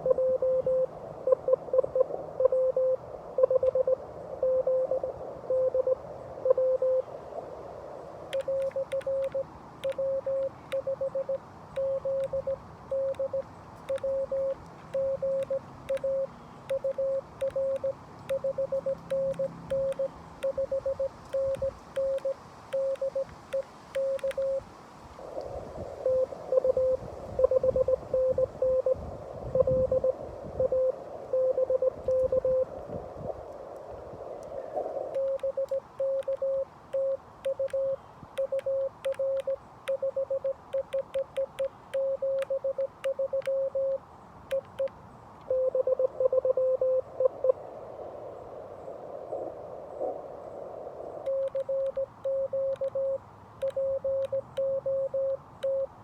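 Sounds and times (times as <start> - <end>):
morse code beeping: 0.0 - 7.0, 8.4 - 24.6, 26.0 - 32.7, 35.2 - 44.9, 45.5 - 47.6, 51.3 - 56.0
sidetone beeping: 0.0 - 7.0, 8.4 - 24.6, 26.0 - 32.7, 35.2 - 44.9, 45.5 - 47.6, 51.3 - 56.0
paddle key clicks: 8.3 - 24.5, 35.2 - 43.6, 44.4 - 45.5.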